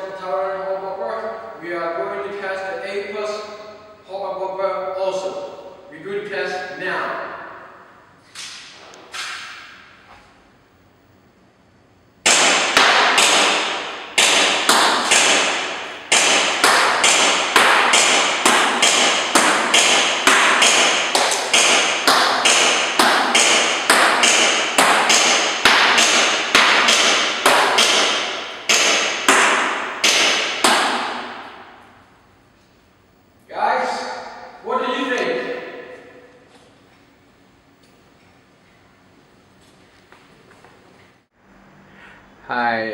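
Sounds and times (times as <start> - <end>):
airsoft gun shots: 12.2 - 31.8.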